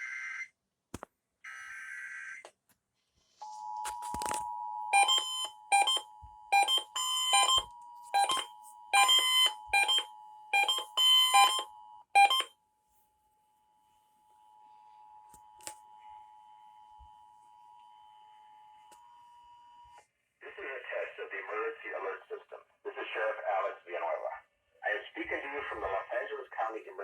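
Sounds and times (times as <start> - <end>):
piercing two-tone attention signal: 3.8 - 12.5.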